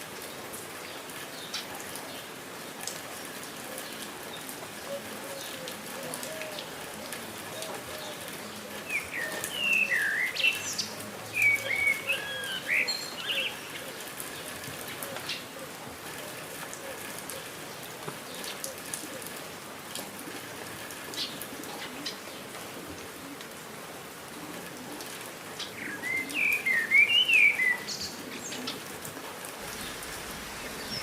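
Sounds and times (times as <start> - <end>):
rain patter: 0.0 - 31.0
bright whistled bird calls: 8.9 - 10.8, 11.4 - 13.5.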